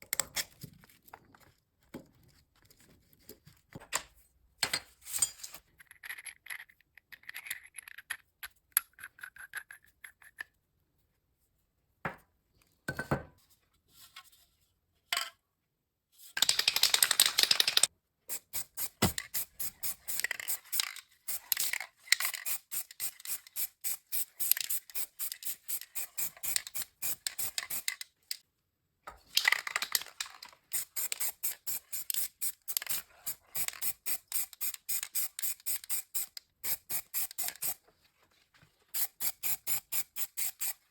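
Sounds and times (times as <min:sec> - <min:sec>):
clicks and knocks of handling parts: 0:29.1 - 0:30.6.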